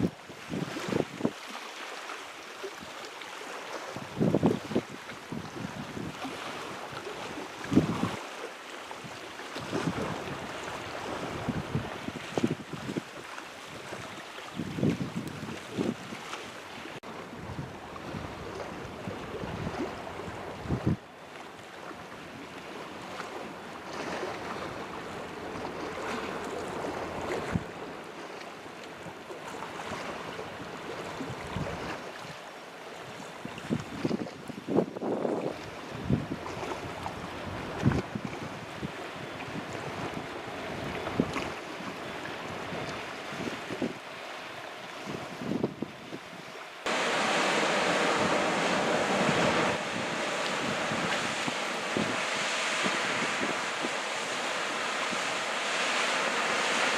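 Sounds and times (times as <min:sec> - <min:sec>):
wind buffeting microphone: 0:00.0 - 0:01.4, 0:04.0 - 0:08.2, 0:09.6 - 0:16.3, 0:17.3 - 0:21.0, 0:33.1 - 0:44.1, 0:45.0 - 0:56.9
water rushing: 0:00.0 - 0:34.5, 0:46.5 - 0:56.9
steady outdoor hiss: 0:46.5 - 0:56.9
wind rushing: 0:46.9 - 0:56.9.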